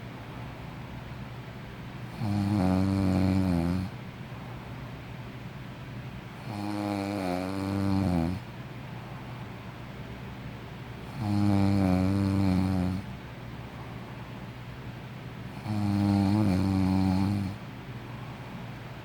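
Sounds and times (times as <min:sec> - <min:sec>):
person snoring: 0:02.1 - 0:03.9, 0:06.4 - 0:08.4, 0:11.1 - 0:13.0, 0:15.6 - 0:17.6.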